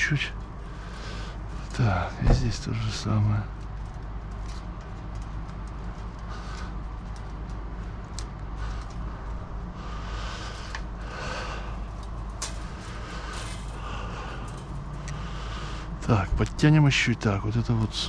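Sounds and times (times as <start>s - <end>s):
steady low rumble: 0.0s - 18.0s
fence wire clicking and scraping: 11.8s - 15.4s.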